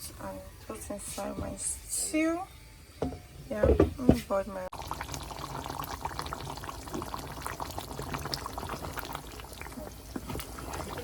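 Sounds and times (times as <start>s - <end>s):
water pouring and splashing: 4.7s - 11.0s.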